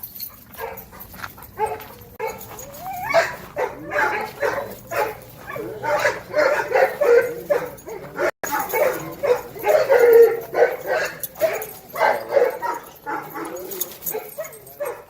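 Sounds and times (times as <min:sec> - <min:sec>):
dogs barking and yipping: 0:00.0 - 0:15.0
dog whining: 0:02.2 - 0:11.7.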